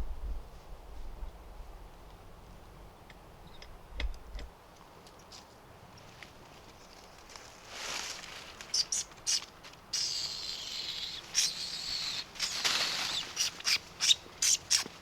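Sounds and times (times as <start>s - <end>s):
footsteps through dry leaves: 6.2s - 8.8s, 12.3s - 14.0s.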